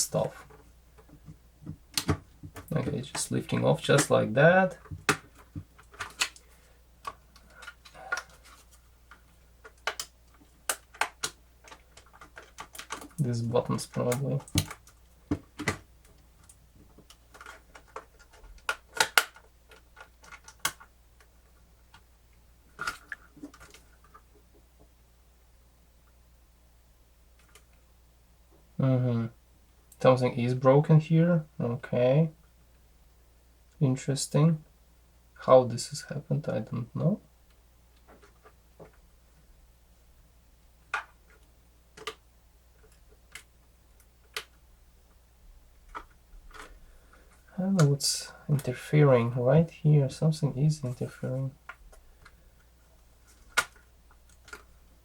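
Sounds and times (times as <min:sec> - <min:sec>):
plastic parts clicking and tapping: 0:00.2 - 0:22.1, 0:22.7 - 0:24.6, 0:27.4 - 0:27.8, 0:37.5 - 0:39.0, 0:40.9 - 0:42.2, 0:42.8 - 0:44.6, 0:45.8 - 0:47.9, 0:51.6 - 0:54.8.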